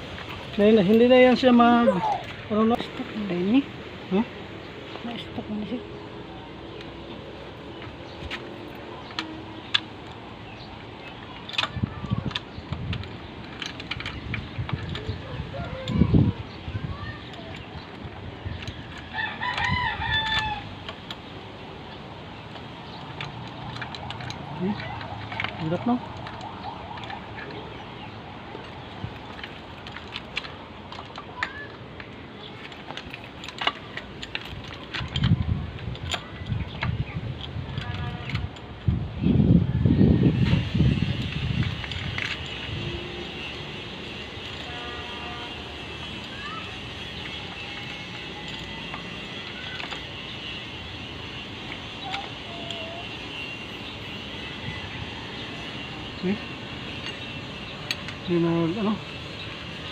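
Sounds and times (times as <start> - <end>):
metal tools clinking: 6.7 - 38.7, 40.4 - 59.9
metallic clicks and taps of tools: 11.0 - 15.2, 28.5 - 38.7, 47.1 - 50.7, 56.8 - 58.3.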